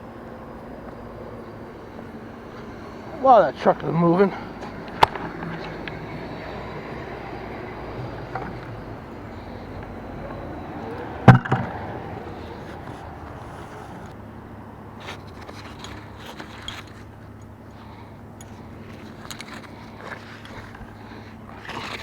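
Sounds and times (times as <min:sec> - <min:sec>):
sharp knock: 0:11.3 - 0:11.7.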